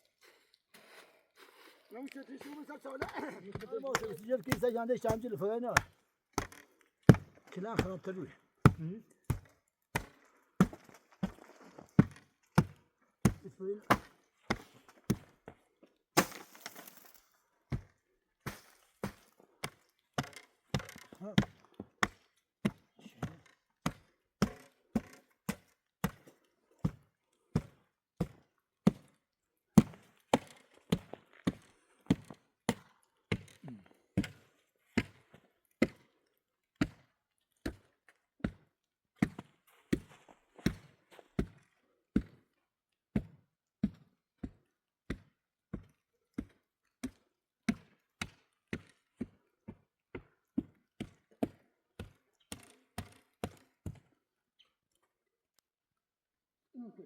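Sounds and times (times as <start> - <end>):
sharp chopping knocks: 7.1 - 8.0.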